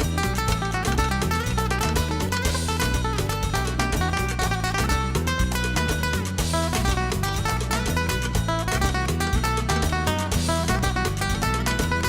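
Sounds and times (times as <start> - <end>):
flamenco acoustic guitars: 0.0 - 12.0
low bass line: 0.0 - 12.0.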